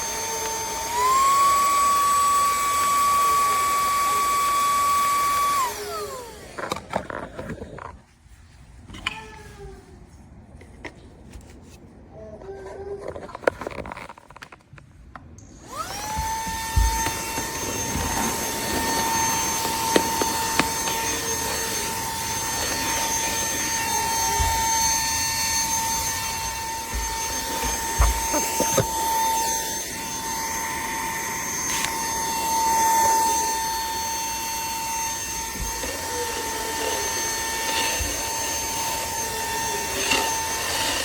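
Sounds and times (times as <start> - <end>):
handheld vacuum motor whine: 0.0 - 8.0, 15.4 - 41.0.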